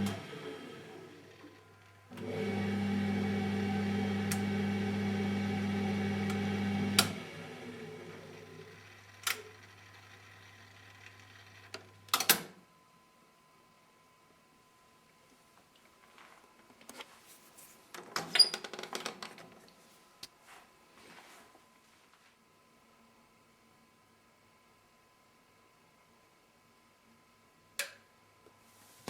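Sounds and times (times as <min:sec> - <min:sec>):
machine hum: 0:00.0 - 0:11.8.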